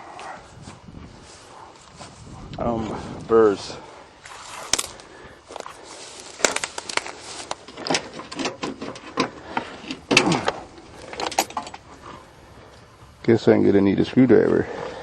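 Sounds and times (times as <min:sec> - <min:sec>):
hands handling parts and tools: 0:04.3 - 0:11.9.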